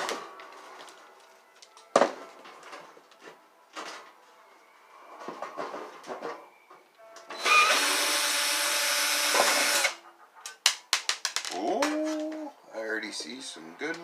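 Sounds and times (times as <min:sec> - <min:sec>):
power drill running: 0:07.3 - 0:10.0.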